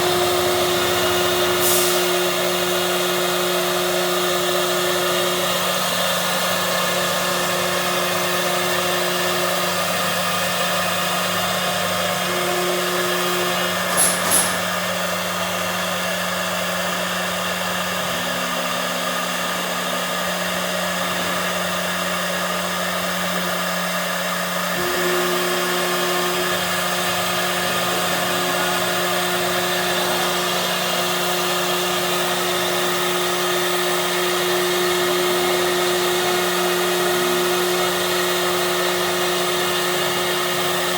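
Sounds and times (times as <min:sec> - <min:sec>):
machine motor hum: 0:00.0 - 0:40.9
higher machine tones: 0:24.8 - 0:35.0.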